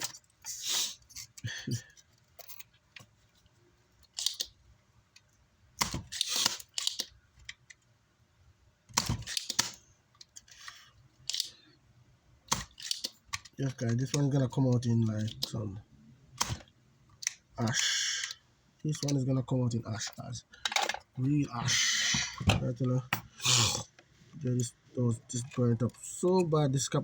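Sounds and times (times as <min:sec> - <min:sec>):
hand tools clicking and scraping: 0:00.0 - 0:02.8.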